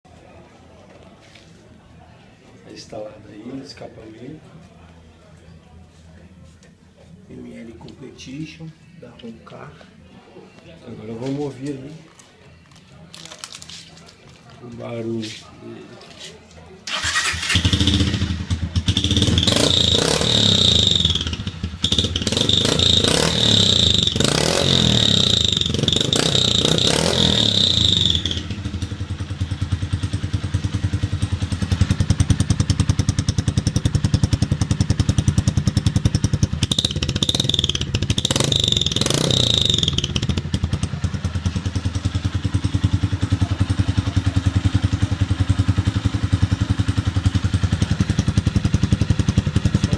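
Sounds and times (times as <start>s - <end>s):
motorcycle engine revving and idling: 16.9s - 49.9s.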